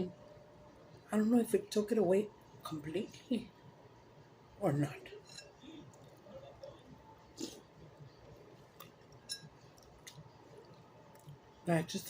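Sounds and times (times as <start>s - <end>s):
spoon clinking on bowl: 9.2s - 9.6s.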